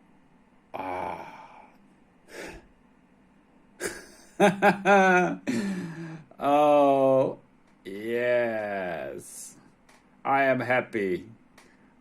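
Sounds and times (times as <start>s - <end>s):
man breathing: 1.2s - 2.7s, 5.5s - 6.3s.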